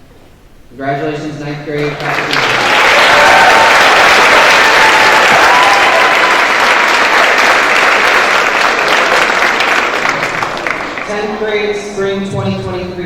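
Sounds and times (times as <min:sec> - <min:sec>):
audience applauding: 0:01.8 - 0:11.2
faint cheers: 0:02.6 - 0:06.8.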